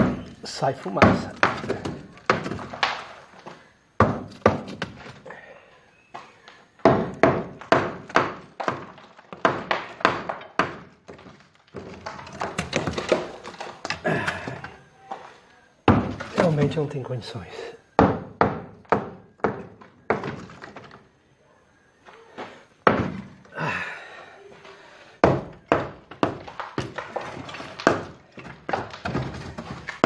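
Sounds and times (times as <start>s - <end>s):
knocks and thuds in small room: 0.0s - 5.2s, 6.2s - 14.8s, 15.8s - 16.8s, 18.0s - 21.0s, 22.8s - 23.6s, 25.2s - 30.0s.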